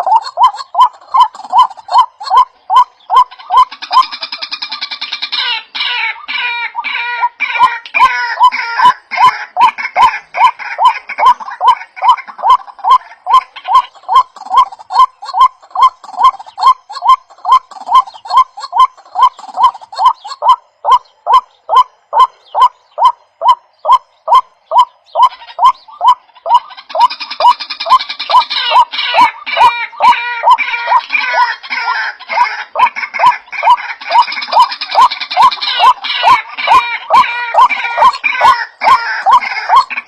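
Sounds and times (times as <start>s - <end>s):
bird calling: 0.0s - 40.0s.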